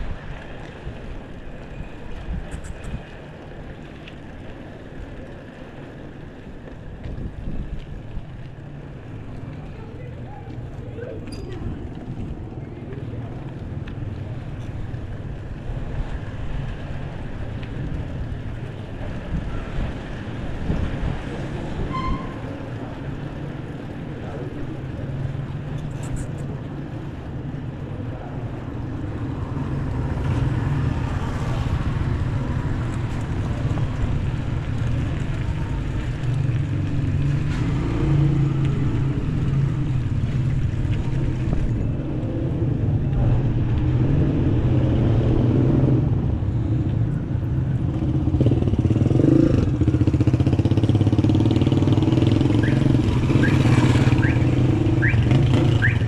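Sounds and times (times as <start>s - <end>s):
bicycle riding noise: 0.0s - 56.0s
motor traffic rumble: 0.0s - 56.0s
short high squeaks: 21.9s - 22.5s.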